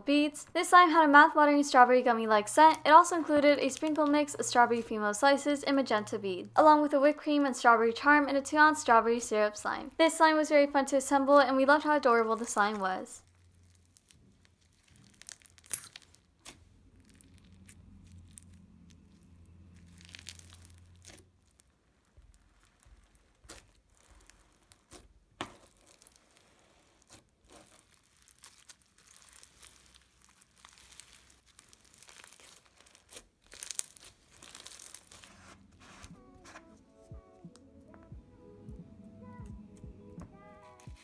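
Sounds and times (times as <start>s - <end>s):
slime crackling and popping: 12.2s - 35.6s.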